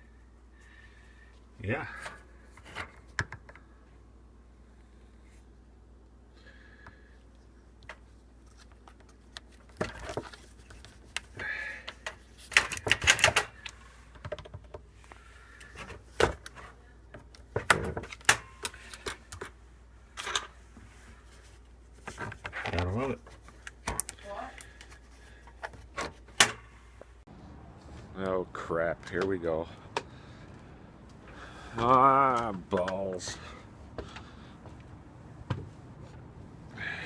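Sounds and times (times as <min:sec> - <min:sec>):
handling and climbing clicks and knocks: 0:07.8 - 0:14.9, 0:28.8 - 0:36.3.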